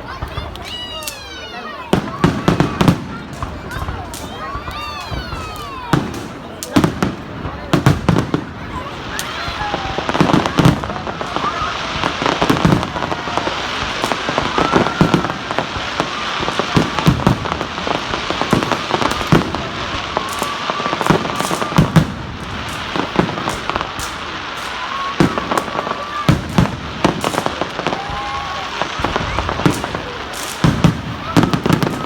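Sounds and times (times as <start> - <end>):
fireworks bangs and crackling: 0.0 - 32.0
faint firework whistles: 7.7 - 32.0.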